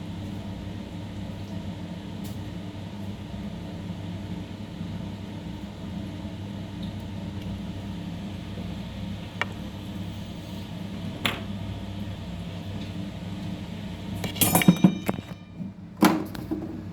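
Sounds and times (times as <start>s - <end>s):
workshop machine humming: 7.1s - 16.9s
ringing metallic clinks: 14.4s - 15.6s.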